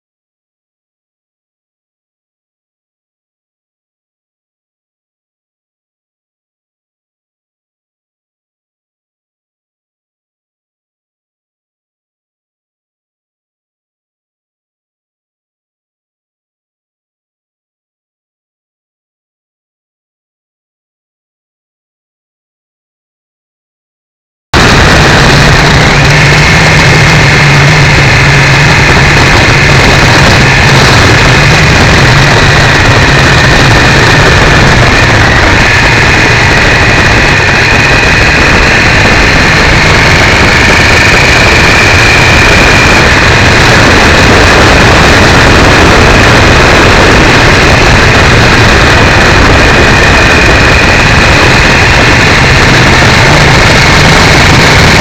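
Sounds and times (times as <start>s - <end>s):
distorted rushing noise: 24.6s - 55.0s
motorcycle engine running: 24.6s - 55.0s.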